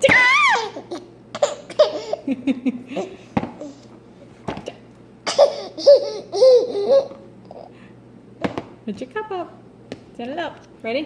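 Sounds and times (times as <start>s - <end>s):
small child laughing: 0.2s - 3.8s, 5.3s - 7.2s.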